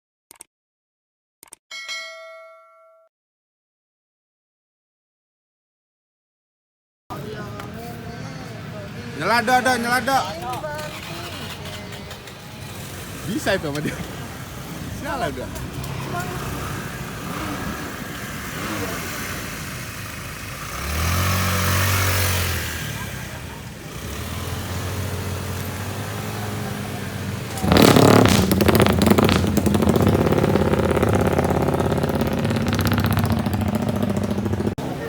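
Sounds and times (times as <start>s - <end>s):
motorcycle engine revving hard: 9.0s - 35.0s
motorcycle engine running low: 25.7s - 35.0s.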